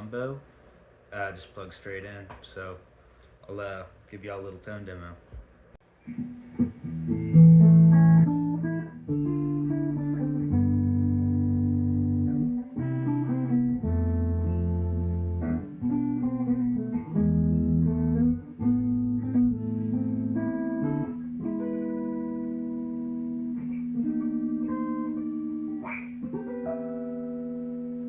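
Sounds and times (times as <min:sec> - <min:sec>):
electric guitar chords ringing: 0:06.0 - 0:28.0.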